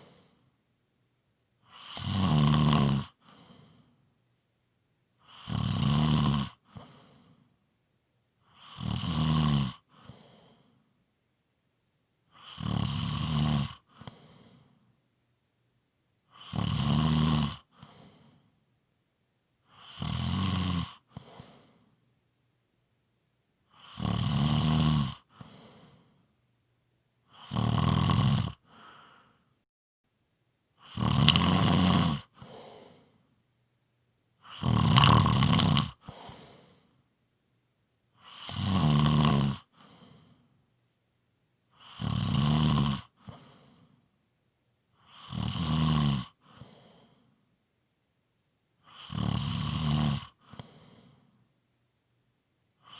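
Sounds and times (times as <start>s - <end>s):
soft breath out: 0.0s - 0.6s, 3.2s - 4.0s, 6.7s - 7.6s, 9.9s - 10.9s, 13.9s - 14.9s, 17.7s - 18.6s, 21.1s - 22.0s, 25.3s - 26.3s, 28.7s - 29.6s, 32.4s - 33.3s, 36.0s - 37.0s, 39.7s - 40.6s, 43.2s - 44.0s, 46.4s - 47.4s, 50.4s - 51.4s
person snoring heavily: 1.7s - 3.8s, 5.2s - 7.4s, 8.5s - 10.6s, 12.4s - 14.6s, 16.3s - 18.3s, 19.7s - 21.8s, 23.7s - 26.0s, 27.3s - 29.4s, 30.8s - 33.1s, 34.4s - 36.8s, 38.2s - 40.2s, 41.8s - 43.7s, 45.0s - 47.1s, 48.9s - 51.1s.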